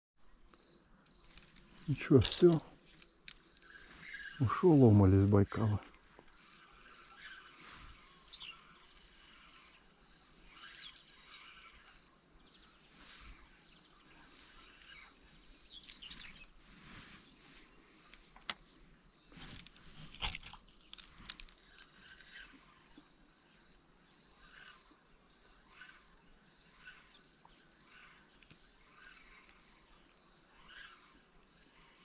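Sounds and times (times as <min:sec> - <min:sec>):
bird chirps: 0:01.1 - 0:20.1.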